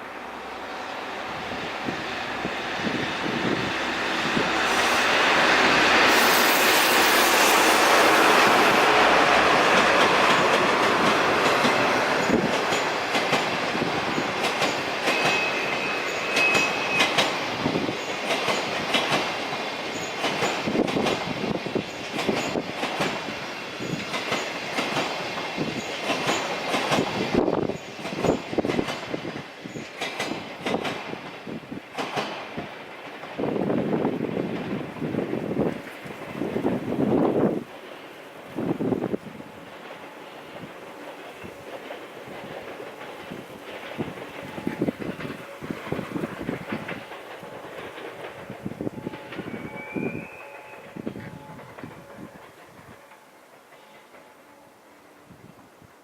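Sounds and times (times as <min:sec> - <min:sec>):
train rushing past: 0:00.0 - 0:55.4
coaches clacking over rail joints: 0:00.3 - 0:54.8
wheels squealing: 0:02.8 - 0:13.2, 0:14.1 - 0:18.1, 0:48.9 - 0:51.3.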